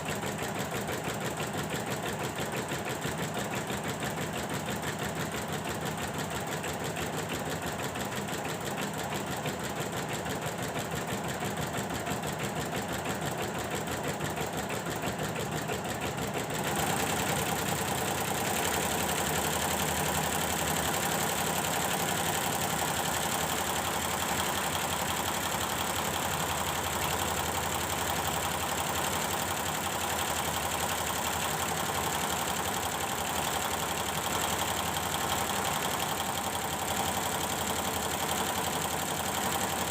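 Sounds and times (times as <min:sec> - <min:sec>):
embroidery machine stitching: 0:00.1 - 0:39.9.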